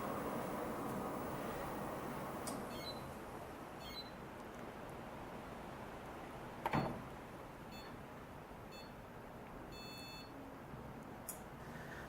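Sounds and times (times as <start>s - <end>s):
treadmill console beeps: 2.7s - 3.1s, 3.8s - 4.2s, 7.7s - 8.0s, 8.7s - 9.0s, 9.7s - 10.4s.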